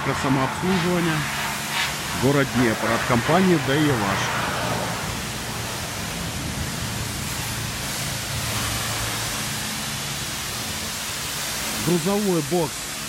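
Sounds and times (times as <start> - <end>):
high-pressure water spraying: 0.0 - 13.0
low steady hum: 0.0 - 13.0.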